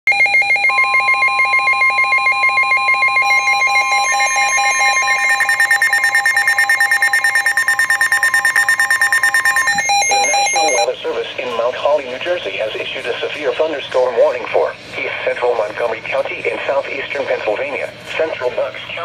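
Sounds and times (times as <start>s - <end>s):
rapid electronic beeping: 0.1s - 10.9s
steady electronic alarm tone: 0.1s - 10.9s.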